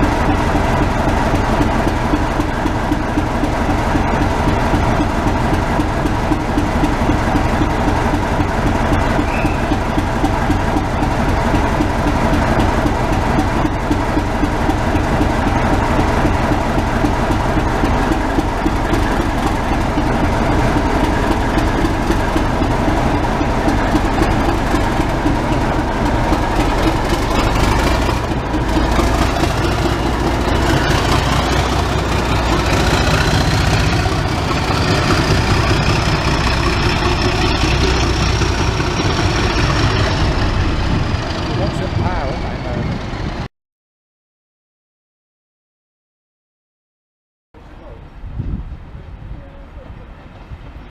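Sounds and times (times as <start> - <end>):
locomotive engine running: 0.0 - 43.5
high whine rising in pitch: 29.3 - 43.5.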